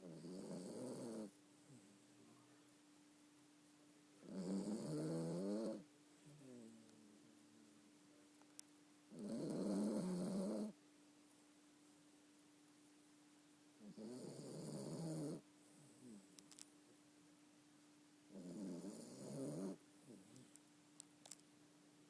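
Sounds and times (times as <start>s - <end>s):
dog snoring: 0.0s - 2.0s, 4.2s - 6.8s, 9.1s - 10.8s, 13.8s - 16.3s, 18.3s - 20.6s.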